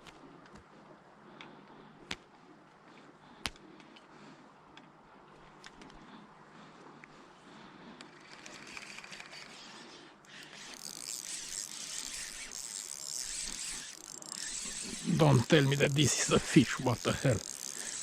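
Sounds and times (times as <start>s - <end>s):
faint reel clicks: 8.0s - 18.0s
fishing reel gears whirring: 8.0s - 18.0s.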